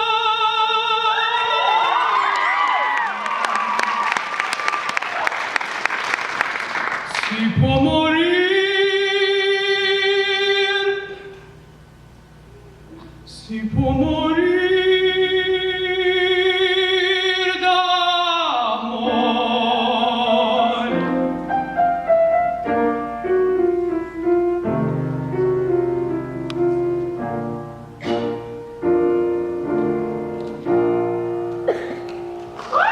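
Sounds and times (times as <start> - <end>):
operatic singing with vibrato: 0.0 - 3.9, 7.1 - 11.4, 13.3 - 21.8
piano accompaniment: 18.8 - 32.9.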